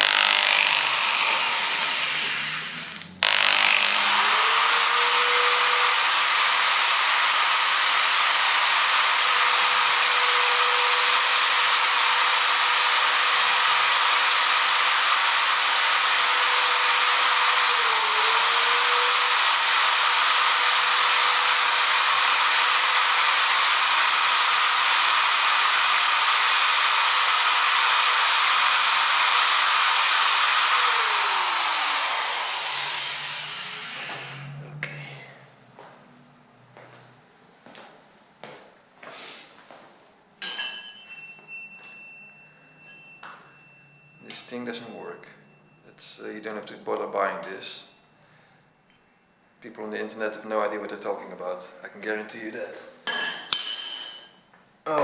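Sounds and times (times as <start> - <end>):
electric drill boring metal: 0.0 - 34.6.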